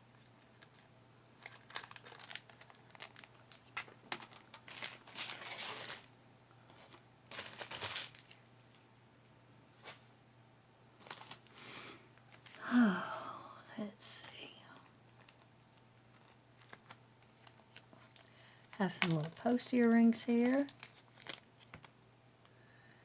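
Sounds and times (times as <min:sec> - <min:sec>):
packaging crinkling: 0:00.2 - 0:08.8, 0:11.0 - 0:11.6, 0:12.2 - 0:12.8, 0:14.1 - 0:22.1.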